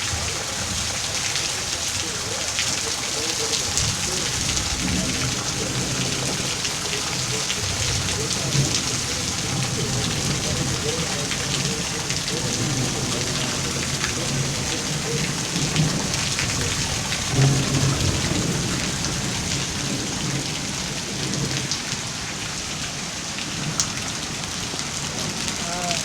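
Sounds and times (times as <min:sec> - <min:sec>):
heavy rain hissing: 0:00.0 - 0:26.0
low thunder rumble: 0:03.2 - 0:22.2.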